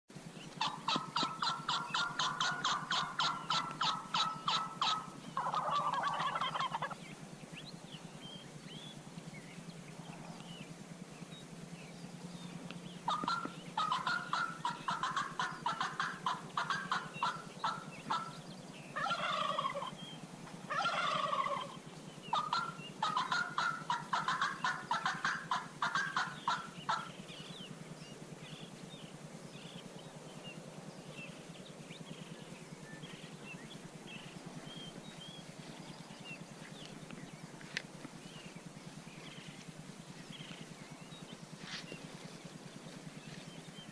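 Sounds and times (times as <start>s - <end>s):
falling turkey calls: 0.5s - 7.0s, 13.0s - 27.2s
turkeys gobbling: 0.6s - 7.1s, 13.0s - 27.2s.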